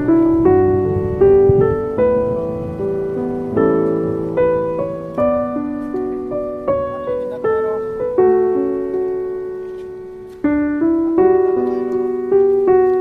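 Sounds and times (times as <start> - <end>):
gentle piano music: 0.0 - 13.0.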